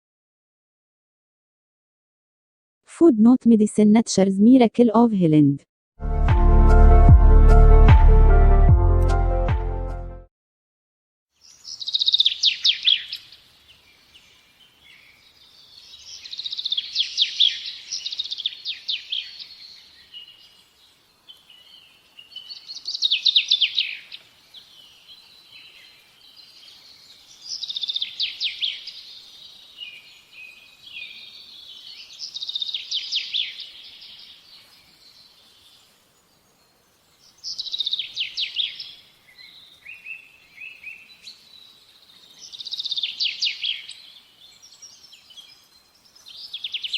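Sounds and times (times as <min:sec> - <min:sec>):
soft bird chirps: 0:11.4 - 0:46.9
songbird trilling: 0:11.6 - 0:13.3, 0:22.2 - 0:24.2, 0:37.3 - 0:41.4, 0:42.4 - 0:44.0.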